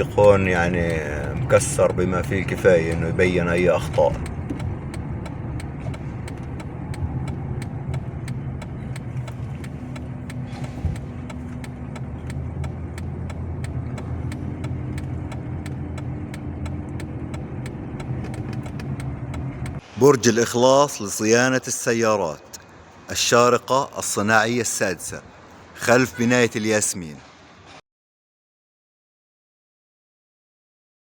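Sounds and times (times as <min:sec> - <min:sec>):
engine and road hum: 0:00.0 - 0:27.8
car suspension thump: 0:04.1 - 0:06.6, 0:08.7 - 0:11.7.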